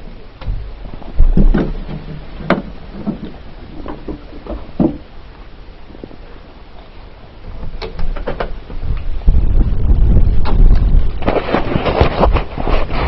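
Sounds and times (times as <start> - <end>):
low steady rumble: 0.0 - 13.0
knocks and thumps: 0.4 - 5.1.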